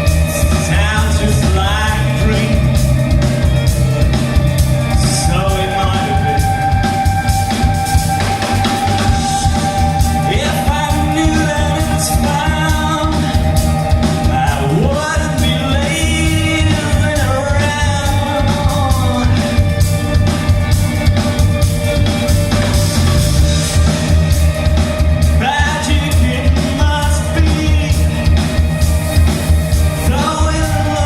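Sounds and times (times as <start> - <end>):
person singing: 0.0 - 3.2, 4.9 - 7.1, 8.8 - 19.7, 25.4 - 28.4, 30.0 - 31.0
band playing a song: 0.0 - 31.0.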